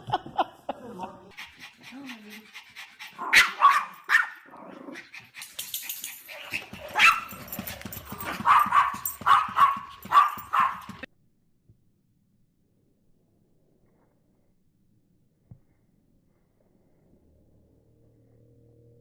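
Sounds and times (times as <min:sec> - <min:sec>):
dog barking: 0:03.2 - 0:04.4, 0:06.4 - 0:11.1.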